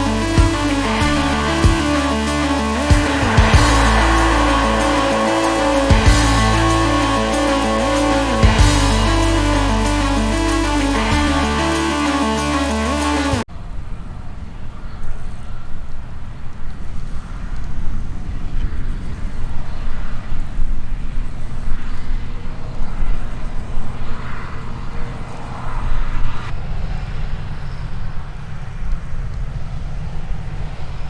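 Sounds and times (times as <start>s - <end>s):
rushing noise: 0.0s - 13.4s.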